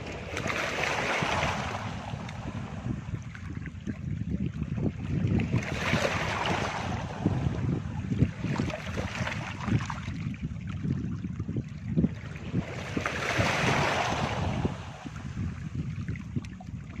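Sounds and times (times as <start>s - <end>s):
sea waves washing onto beach: 0.0s - 3.1s, 12.4s - 15.5s
wind buffeting microphone: 0.0s - 17.0s.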